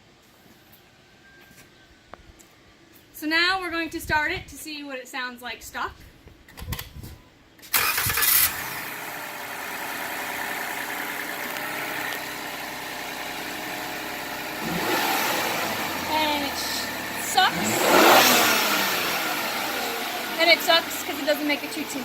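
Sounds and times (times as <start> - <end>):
car engine starting and idling: 7.7 - 22.0.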